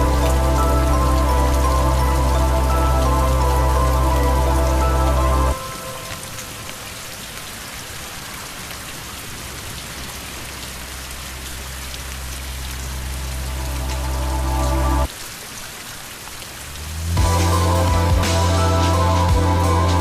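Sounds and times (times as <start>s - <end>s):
low musical drone: 0.0s - 6.2s, 12.9s - 15.1s, 17.1s - 20.0s
steady rain falling: 0.0s - 20.0s.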